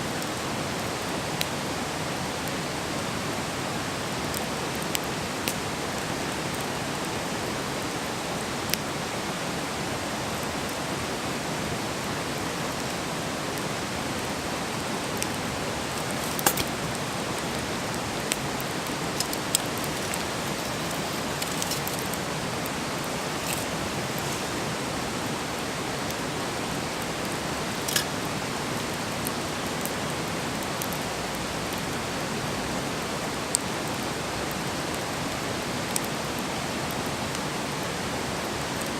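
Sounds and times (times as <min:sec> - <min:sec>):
campfire hissing: 0:00.0 - 0:38.9
wood crackling and popping: 0:03.8 - 0:07.6, 0:12.7 - 0:32.0.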